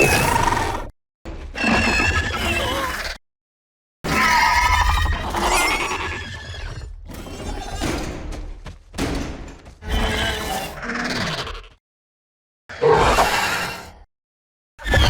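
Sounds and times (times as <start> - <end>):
creature growls and calls: 0.0 - 0.9, 12.7 - 14.0
shrieking roar: 12.7 - 13.8.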